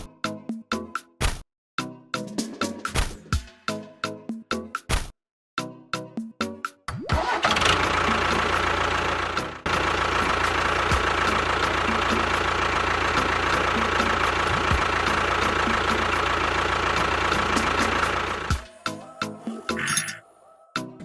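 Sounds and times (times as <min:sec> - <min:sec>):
small motor running: 0:07.5 - 0:18.7.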